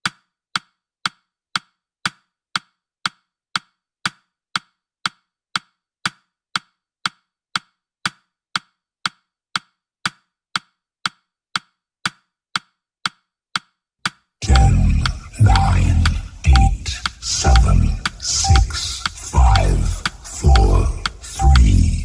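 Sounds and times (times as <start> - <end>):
timer ticking: 14.4 - 22.0.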